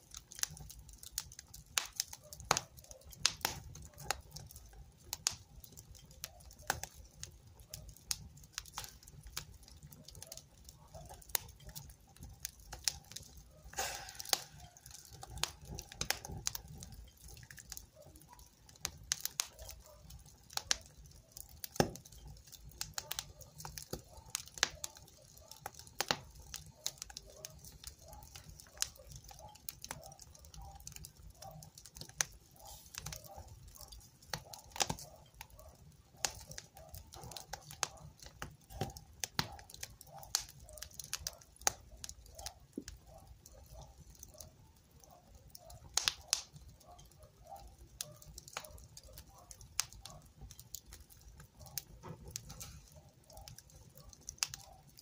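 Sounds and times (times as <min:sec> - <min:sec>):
rumble of flames: 0:00.0 - 0:55.0
wood fire crackling: 0:00.0 - 0:55.0.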